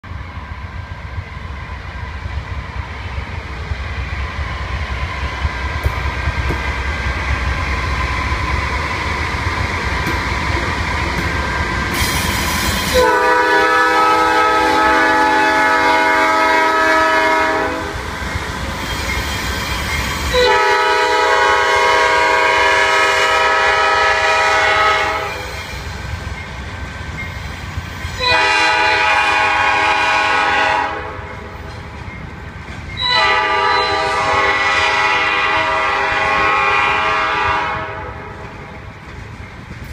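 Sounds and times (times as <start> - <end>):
train rumbling: 0.0 - 39.9
locomotive horn blasts: 12.9 - 18.0, 20.3 - 25.5, 28.2 - 31.3, 33.0 - 38.4.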